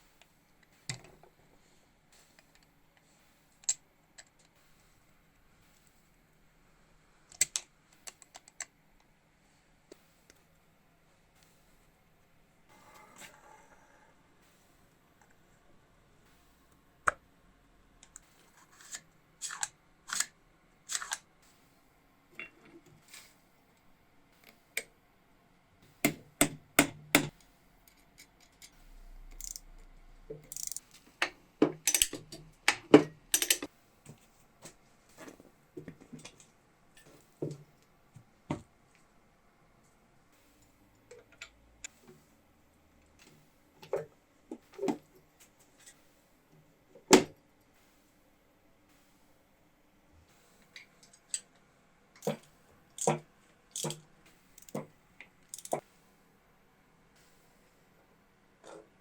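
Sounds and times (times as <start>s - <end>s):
hand tools and metal knocking: 31.6s - 33.7s.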